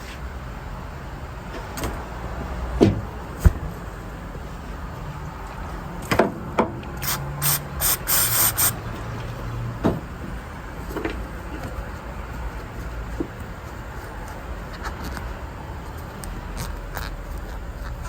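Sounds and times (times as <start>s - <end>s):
sharp mechanical clicks: 7.0s - 8.8s
short hissing bursts: 7.0s - 8.8s.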